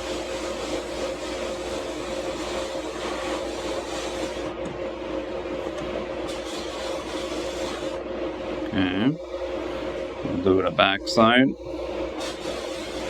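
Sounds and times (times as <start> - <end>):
air blast gun hissing: 0.0 - 4.6, 6.2 - 8.0, 10.7 - 13.0
constant hum: 0.0 - 13.0.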